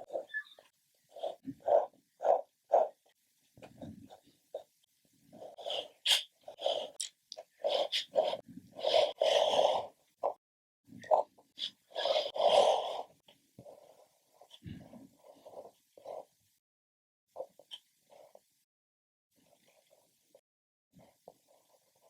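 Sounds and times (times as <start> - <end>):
drawing strokes scraping paper: 0.0 - 3.2, 3.8 - 10.4, 11.1 - 16.4, 21.0 - 22.0.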